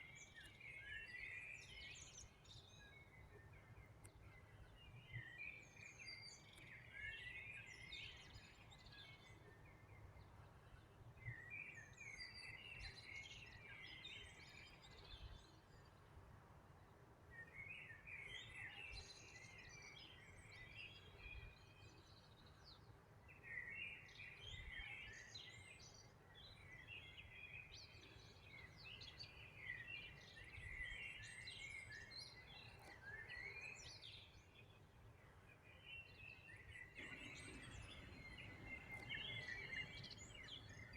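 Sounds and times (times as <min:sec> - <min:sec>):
songbird twittering: 0:36.3 - 0:40.9.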